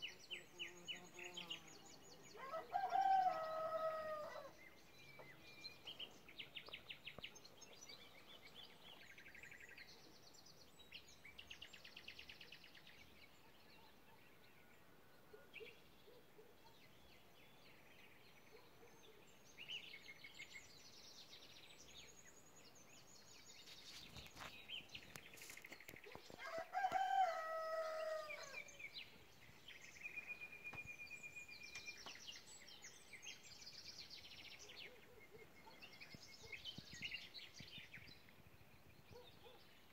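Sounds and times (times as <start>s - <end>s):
songbirds trilling and chirping: 0.0s - 39.9s
rooster crowing: 2.4s - 4.5s, 26.4s - 28.6s.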